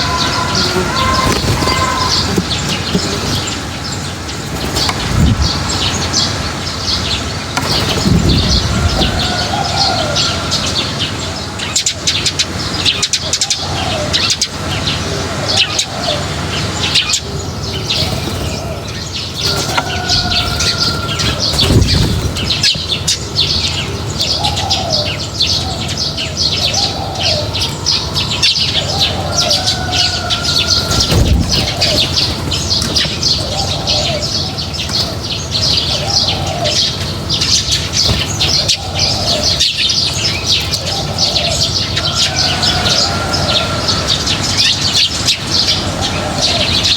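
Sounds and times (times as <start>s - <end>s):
low bird call notes: 0.0s - 12.3s
small birds chirping and twittering: 0.0s - 46.9s
low thumps: 30.7s - 33.6s.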